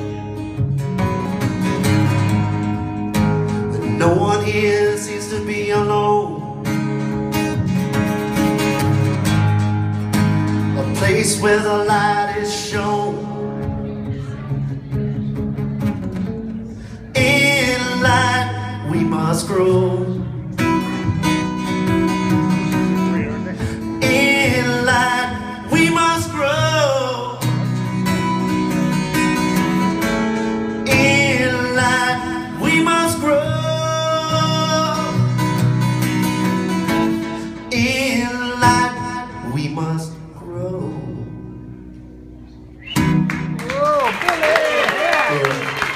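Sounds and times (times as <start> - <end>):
acoustic guitar: 0.0 - 45.9
live band playing country song: 0.0 - 45.9
person singing: 30.8 - 35.3.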